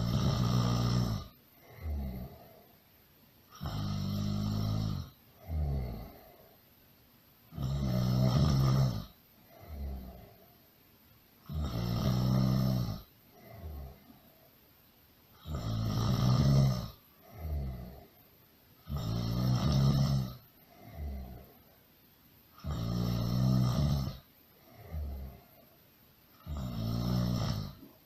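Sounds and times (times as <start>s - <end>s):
loud snoring: 0.0s - 2.6s, 3.5s - 6.5s, 7.5s - 10.4s, 11.4s - 14.1s, 15.3s - 18.2s, 18.8s - 21.6s, 22.6s - 25.6s, 26.4s - 28.0s.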